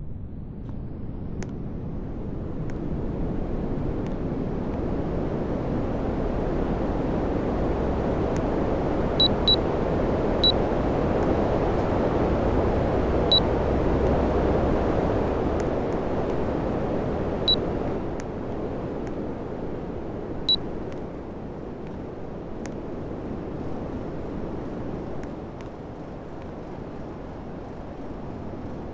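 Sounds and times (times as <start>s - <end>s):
short high electronic beeps: 9.2s - 9.6s.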